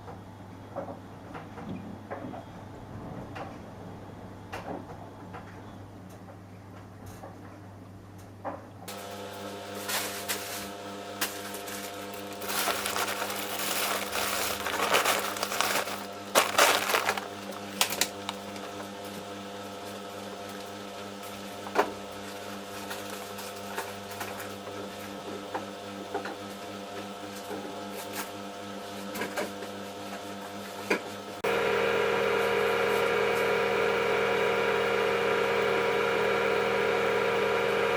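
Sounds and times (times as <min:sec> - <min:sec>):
washing machine motor hum: 0:10.7 - 0:19.6, 0:31.4 - 0:37.9.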